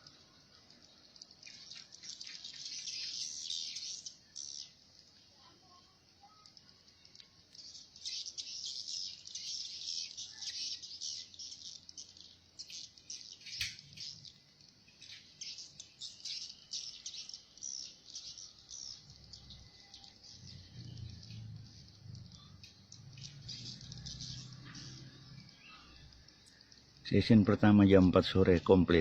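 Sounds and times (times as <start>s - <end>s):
swiftlets twittering: 15.2s - 27.8s.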